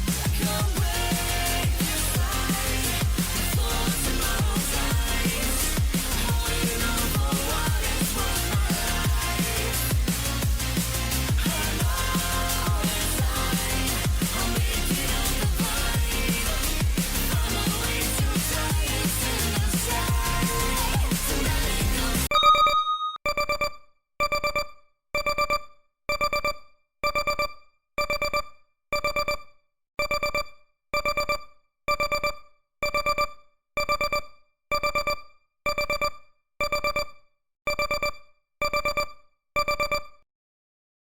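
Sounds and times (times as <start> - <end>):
timer alarm beeps: 22.3 - 40.2.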